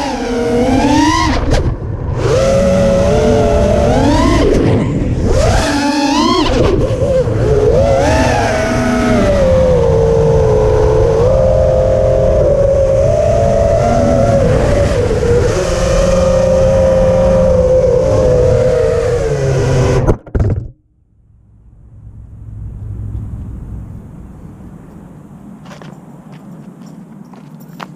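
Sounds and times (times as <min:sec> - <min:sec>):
drone propellers whining: 0:00.0 - 0:26.0
low rumble: 0:08.5 - 0:25.6.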